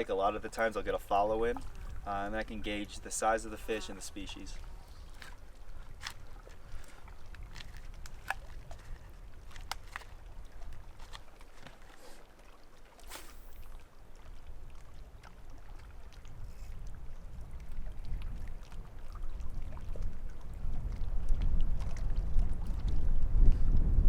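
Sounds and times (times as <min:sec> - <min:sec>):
wind buffeting microphone: 0:00.0 - 0:03.6, 0:14.5 - 0:24.0
sharp hiss: 0:13.1 - 0:13.6.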